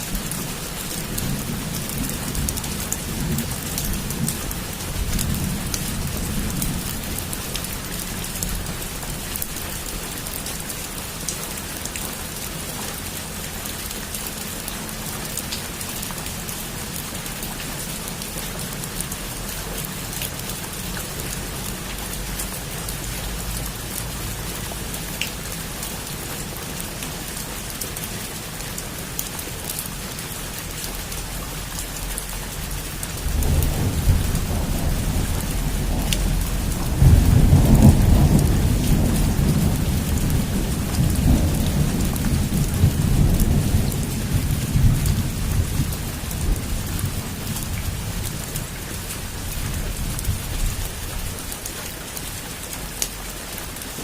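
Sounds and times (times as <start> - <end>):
distant thunder rumble: 0.0 - 9.6, 33.1 - 51.3
heavy rain falling: 0.0 - 54.0.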